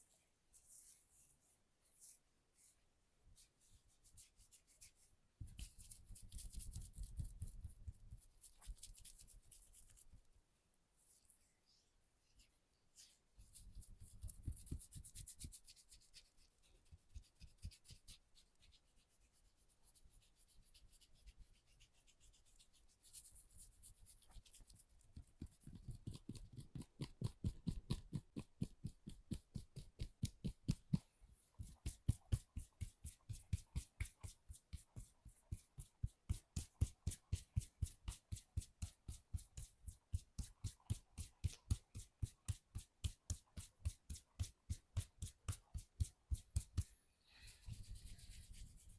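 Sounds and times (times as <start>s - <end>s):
hands tapping on body: 25.2s - 46.9s.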